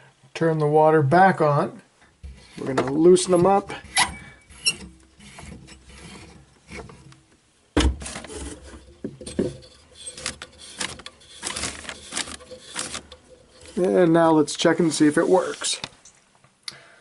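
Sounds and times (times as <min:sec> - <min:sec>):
hands working valves: 0:02.2 - 0:07.3, 0:07.9 - 0:16.0.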